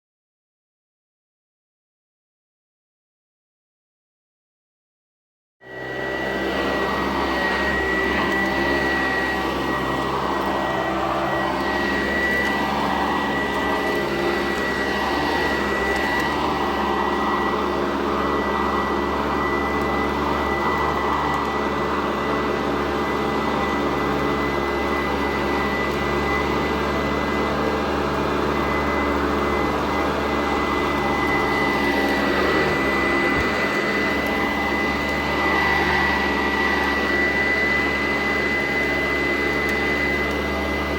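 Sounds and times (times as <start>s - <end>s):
vacuum cleaner running: 5.6s - 40.9s.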